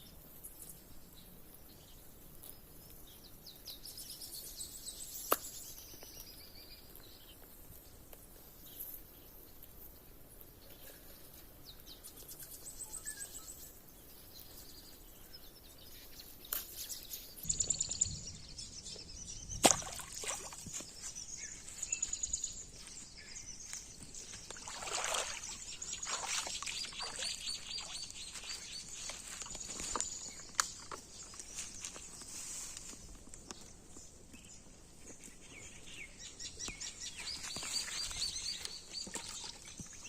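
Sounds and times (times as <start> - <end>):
bird chirps and trills: 15.9 - 31.0
rustling or splashing bursts: 19.5 - 21.2, 24.2 - 30.0.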